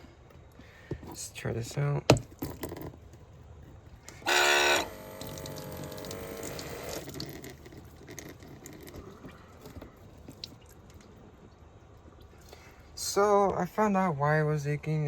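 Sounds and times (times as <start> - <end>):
faucet whine: 4.2 - 9.0
water running into sink: 4.3 - 9.0.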